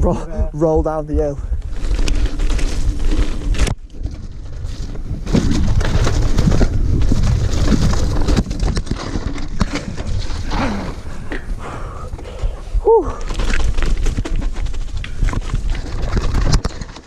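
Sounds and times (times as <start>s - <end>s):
wind buffeting microphone: 0.0s - 16.9s
bike clattering over rough ground: 1.2s - 17.0s
heavy breathing: 10.5s - 13.4s.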